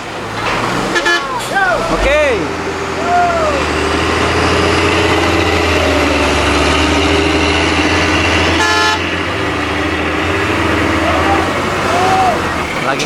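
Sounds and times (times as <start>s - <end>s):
truck engine running: 0.0s - 13.0s
truck horn toot: 0.8s - 1.8s, 7.2s - 9.6s.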